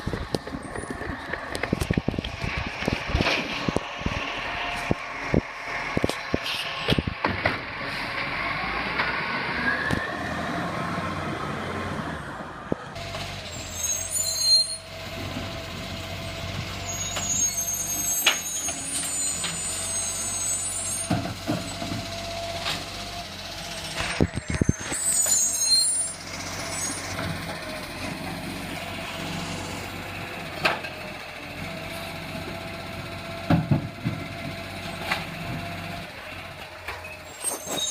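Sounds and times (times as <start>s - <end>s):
diesel engine running: 0.0s - 37.9s
knocks and clanks: 33.4s - 35.7s.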